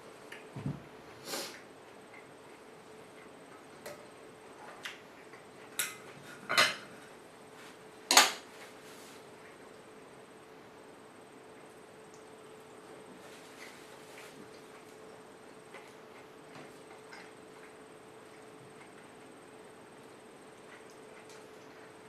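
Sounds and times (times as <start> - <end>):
eating clicks and clatters: 14.4 - 19.3.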